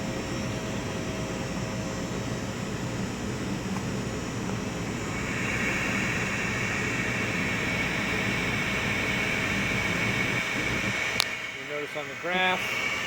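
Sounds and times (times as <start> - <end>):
hot air hiss: 4.7 - 13.0
hot air rushing: 4.8 - 13.0.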